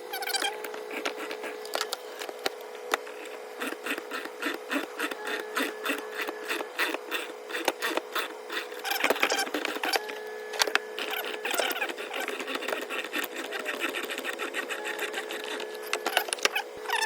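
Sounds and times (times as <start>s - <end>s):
steady hum: 0.0s - 17.0s.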